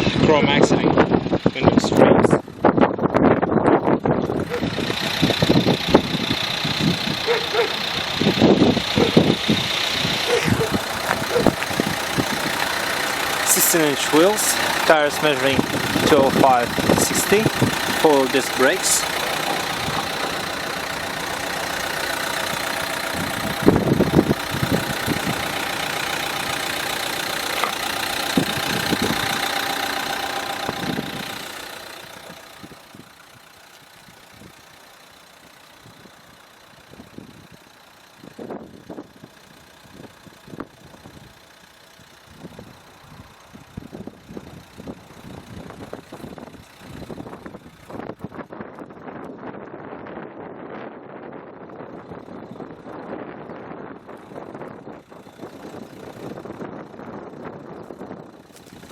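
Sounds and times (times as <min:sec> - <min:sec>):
diesel engine idling: 0:00.0 - 0:58.9.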